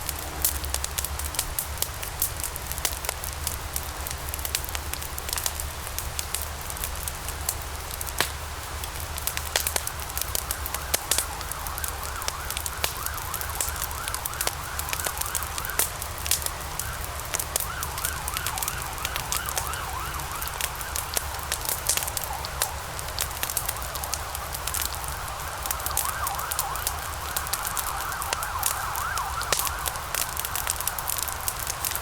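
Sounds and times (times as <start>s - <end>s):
low rumble: 0.0s - 2.1s
fire crackling and popping: 0.0s - 32.0s.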